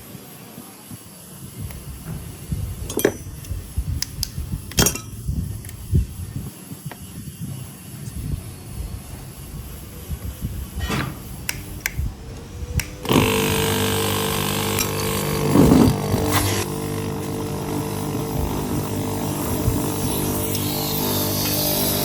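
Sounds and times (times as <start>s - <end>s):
power tool motor running: 12.7s - 22.0s.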